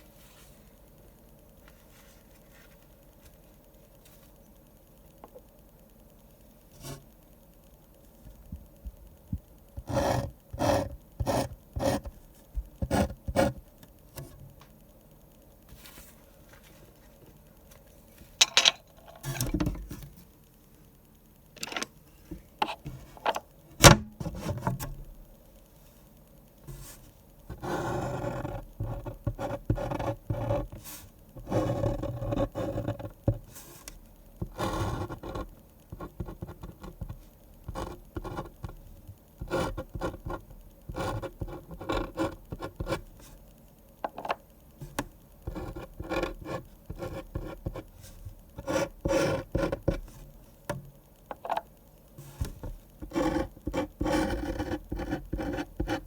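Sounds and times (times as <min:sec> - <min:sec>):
pen scratching on paper: 0:09.8 - 0:12.2, 0:12.8 - 0:13.6, 0:27.5 - 0:30.8, 0:31.4 - 0:33.4, 0:34.4 - 0:38.7, 0:39.4 - 0:43.1, 0:45.4 - 0:50.2, 0:52.2 - 0:56.0.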